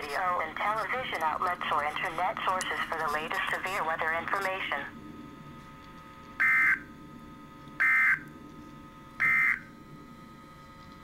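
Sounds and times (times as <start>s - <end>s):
faint radio hiss: 0.0s - 5.7s.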